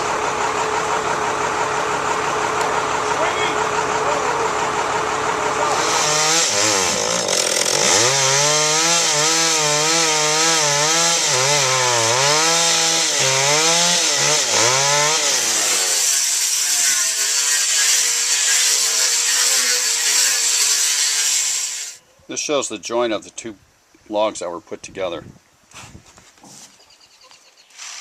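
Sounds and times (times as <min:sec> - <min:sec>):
chainsaw cutting log: 0:05.4 - 0:22.0, 0:27.7 - 0:28.0.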